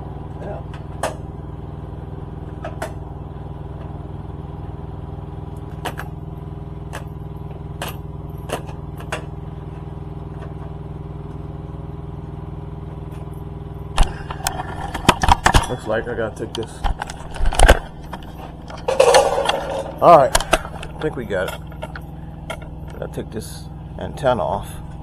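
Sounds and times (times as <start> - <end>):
low mechanical hum: 0.0 - 25.0
sharp clicks and knocks: 14.0 - 15.8, 16.5 - 23.0.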